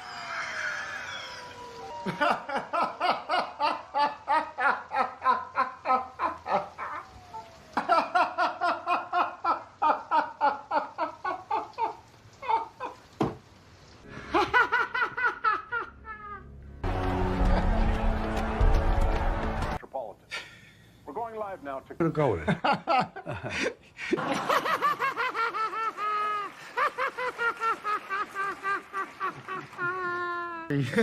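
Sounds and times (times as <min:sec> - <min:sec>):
person laughing hard: 0:01.9 - 0:07.1, 0:14.2 - 0:16.5, 0:22.6 - 0:31.0.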